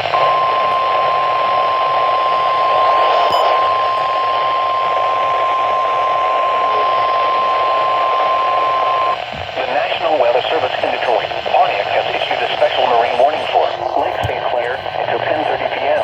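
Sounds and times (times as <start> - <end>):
steady high alarm tone: 0.0 - 9.3
receiver static: 0.0 - 16.0.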